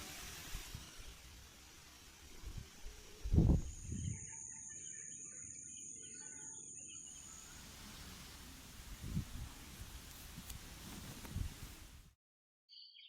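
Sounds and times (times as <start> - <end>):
birds chirping: 3.6 - 12.0.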